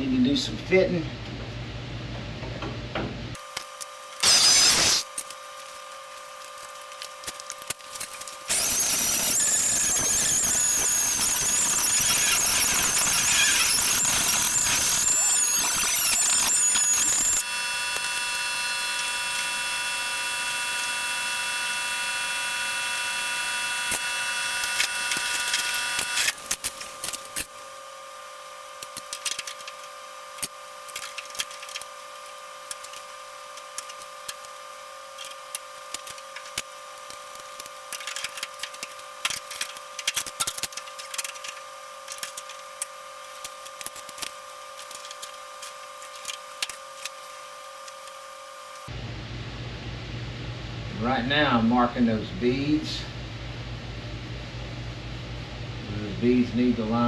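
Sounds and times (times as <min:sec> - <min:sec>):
power grinder squealing on metal: 0:04.2 - 0:05.2, 0:08.1 - 0:27.5.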